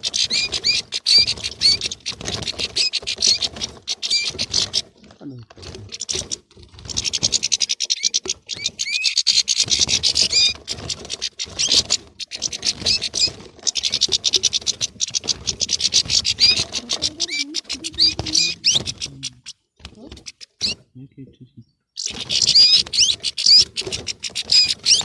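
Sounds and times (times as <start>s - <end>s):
finches twittering: 0.0s - 20.8s, 21.5s - 25.0s.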